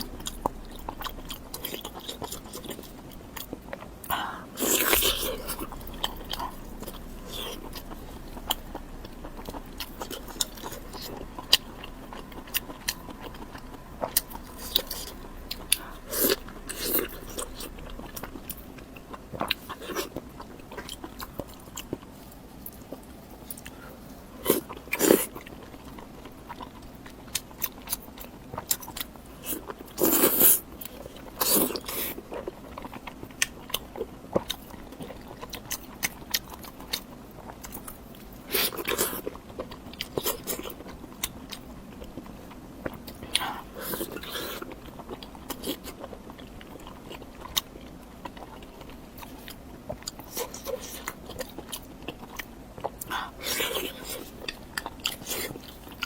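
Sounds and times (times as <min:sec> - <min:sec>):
person biting and chewing food: 0:00.0 - 0:22.1.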